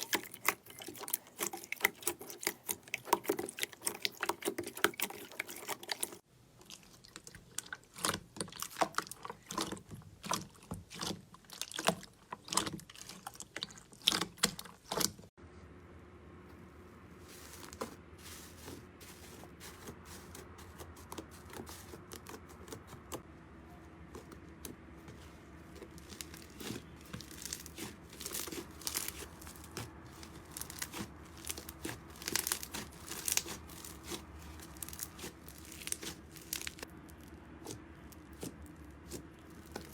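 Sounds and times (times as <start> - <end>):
faint steady hum: 15.4 - 39.9
slime crackling and popping: 25.8 - 39.9.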